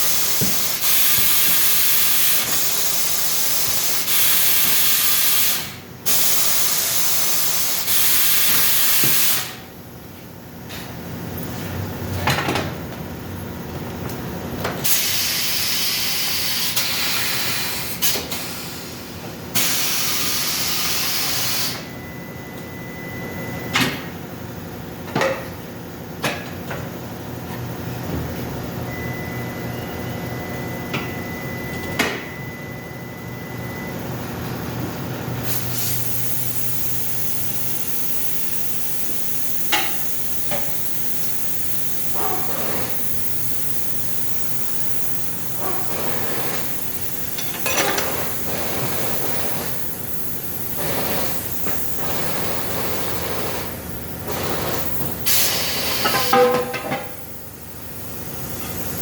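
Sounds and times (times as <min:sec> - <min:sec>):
compressed air hissing: 0:00.0 - 0:09.6, 0:14.8 - 0:21.8, 0:35.4 - 0:38.1, 0:41.9 - 0:43.3, 0:44.1 - 0:57.5
sharp metallic knocks: 0:56.0 - 0:57.2.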